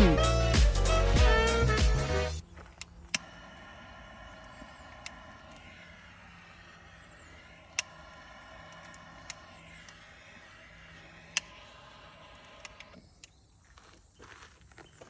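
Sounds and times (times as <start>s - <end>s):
sharp clicks: 2.5s - 13.5s.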